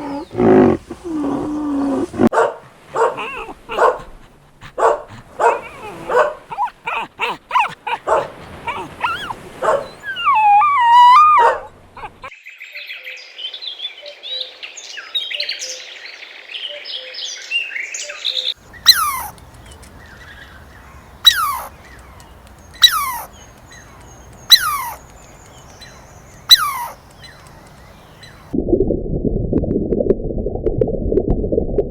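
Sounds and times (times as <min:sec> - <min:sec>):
birds chirping and chattering: 0:00.0 - 0:01.9, 0:04.8 - 0:12.3, 0:18.6 - 0:28.6.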